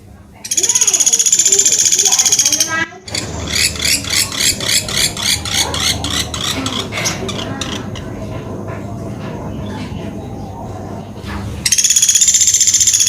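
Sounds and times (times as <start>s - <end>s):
woodpecker calling: 0.5s - 8.2s, 11.6s - 13.0s.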